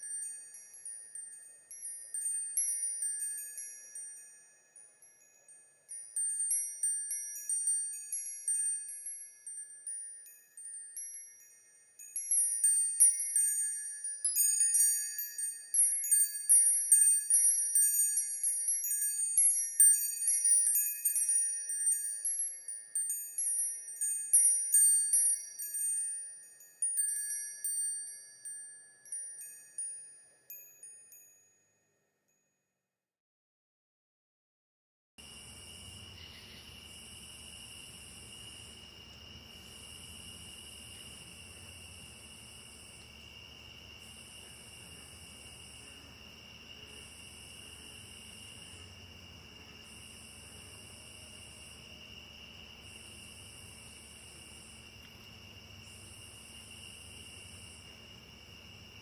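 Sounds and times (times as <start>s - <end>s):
wind chimes tinkling: 0.0s - 32.6s, 35.2s - 59.0s.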